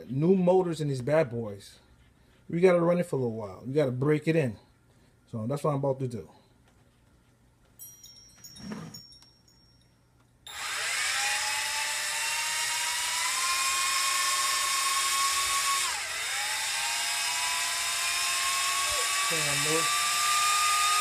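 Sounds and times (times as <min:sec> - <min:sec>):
drone motors whining: 0:10.5 - 0:21.0.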